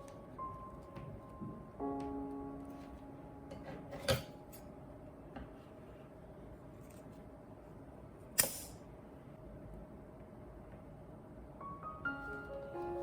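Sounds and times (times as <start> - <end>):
piano chord: 0.0 - 5.6, 11.6 - 13.0.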